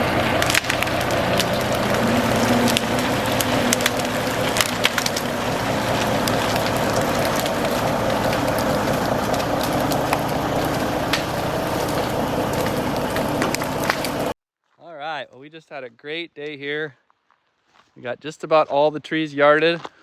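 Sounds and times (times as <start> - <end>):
engine running: 0.0 - 14.4
wood cracking and snapping: 0.0 - 14.4.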